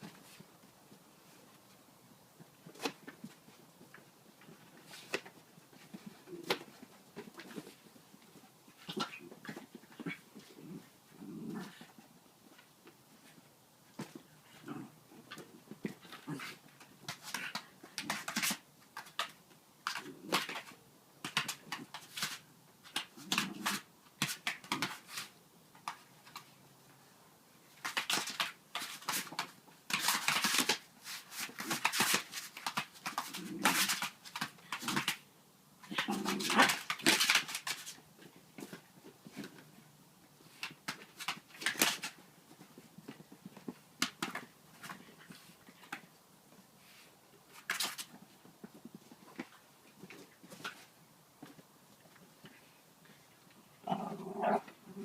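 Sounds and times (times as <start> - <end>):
dog scrabbling with a balloon: 27.9 - 35.2, 35.8 - 38.0.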